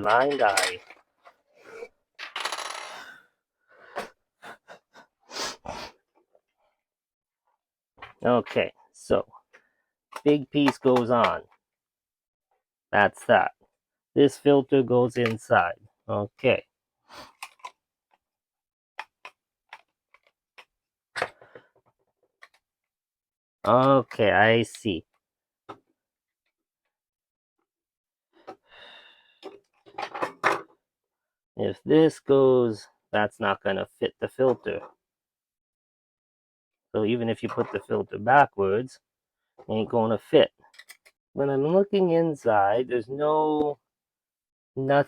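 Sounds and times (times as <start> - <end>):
plastic parts clicking and knocking: 0.0 - 1.4, 9.5 - 11.6, 17.3 - 18.2, 19.0 - 22.6, 29.4 - 30.8, 40.6 - 41.1.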